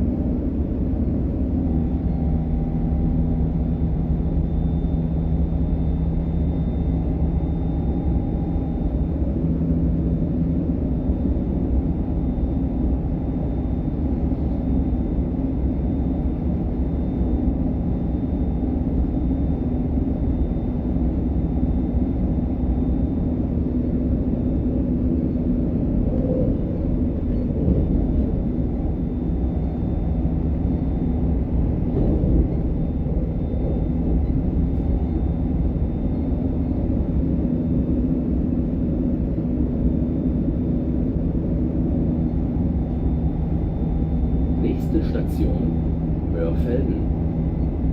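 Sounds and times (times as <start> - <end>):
train wheels rumbling on rails: 24.8 - 37.6.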